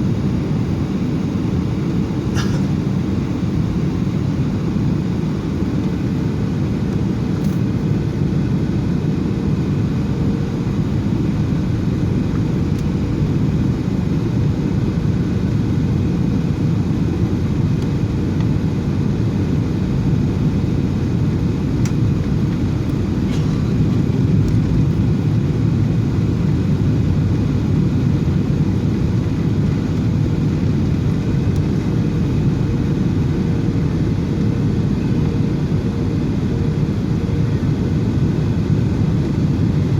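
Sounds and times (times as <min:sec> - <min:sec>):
faint constant hum: 0:00.0 - 0:39.9
jet engine rumble: 0:00.0 - 0:39.9.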